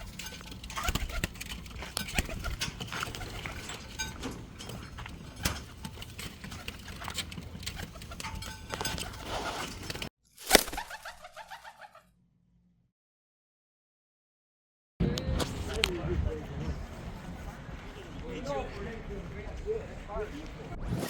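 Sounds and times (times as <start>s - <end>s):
pigeons cooing: 0.0s - 10.0s
clicks and flutters: 0.0s - 12.0s.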